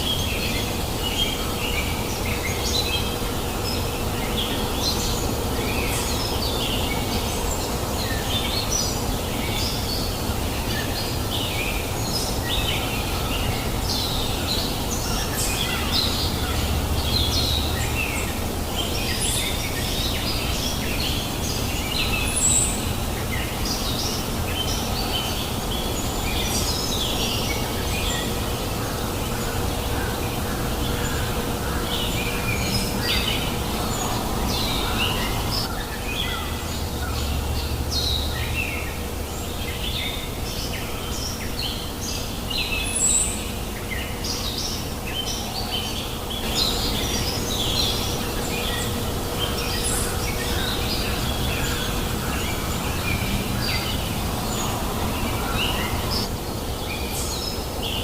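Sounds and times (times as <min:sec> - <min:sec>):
small birds chirping: 0:00.0 - 0:58.0
river flowing: 0:27.8 - 0:35.7.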